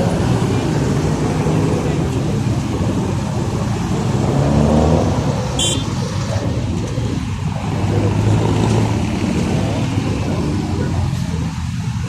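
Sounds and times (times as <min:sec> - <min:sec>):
car engines rumbling: 0:00.0 - 0:12.0.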